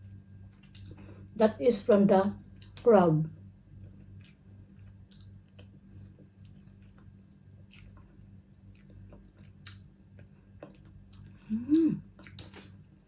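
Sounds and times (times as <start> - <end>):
low steady hum: 0.0 - 13.0
chewing crab: 3.8 - 12.8.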